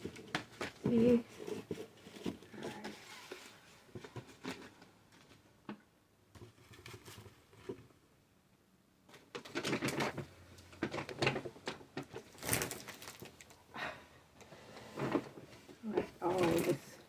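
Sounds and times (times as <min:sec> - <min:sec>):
plastic packaging crinkling: 0:09.1 - 0:13.6.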